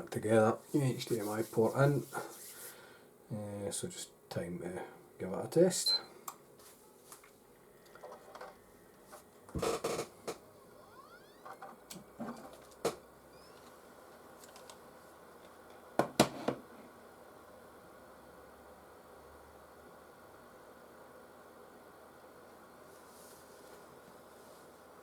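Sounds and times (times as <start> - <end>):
hands handling console and cables: 14.4 - 14.8.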